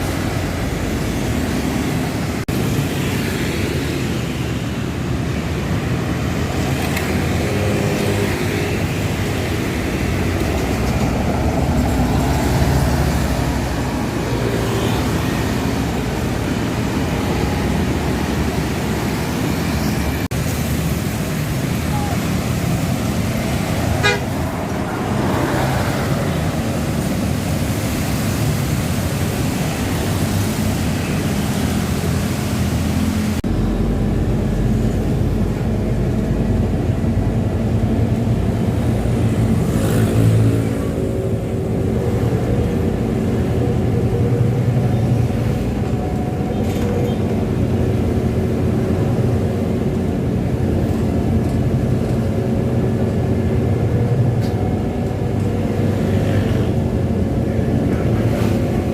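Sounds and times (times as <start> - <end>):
bus engine hum: 0.0 - 58.9
road traffic: 0.0 - 58.9
vehicle horn tooting: 24.0 - 24.4.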